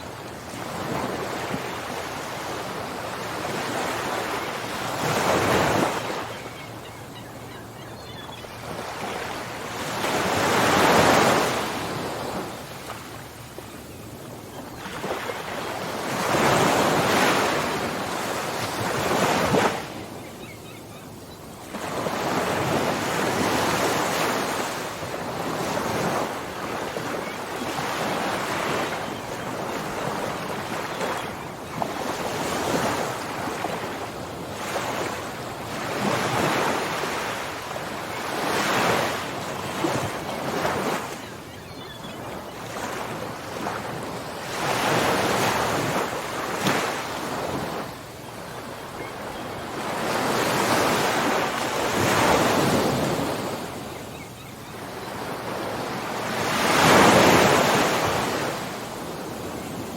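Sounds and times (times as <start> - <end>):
ocean waves breaking on shore: 0.0 - 59.9.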